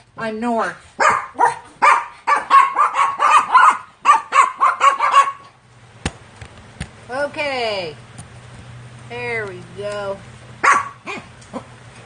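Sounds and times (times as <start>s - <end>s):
small dog yapping: 1.0s - 5.6s, 10.6s - 11.7s.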